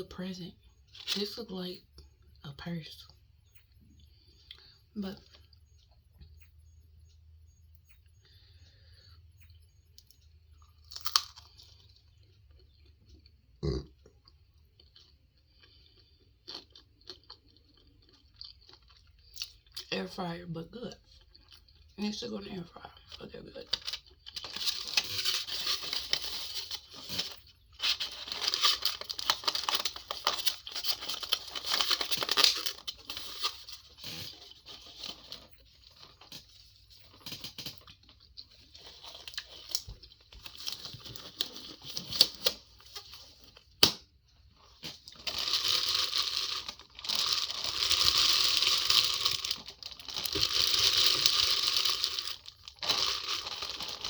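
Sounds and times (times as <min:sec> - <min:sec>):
plastic packaging crinkling: 0:23.7 - 0:43.9, 0:44.6 - 0:54.0.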